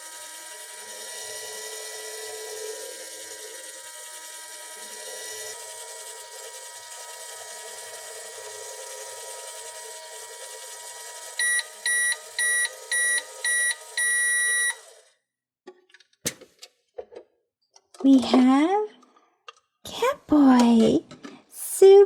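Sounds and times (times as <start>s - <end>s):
toy microwave humming: 0.0s - 15.2s.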